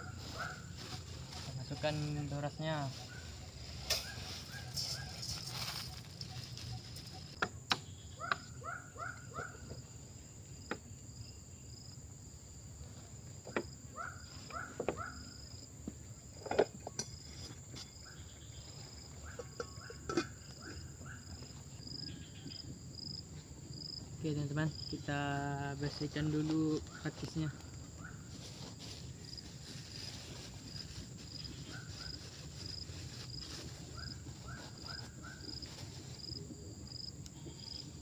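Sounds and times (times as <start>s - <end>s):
pulsing insect trill: 0.0s - 9.0s
insects chirring: 0.0s - 38.0s.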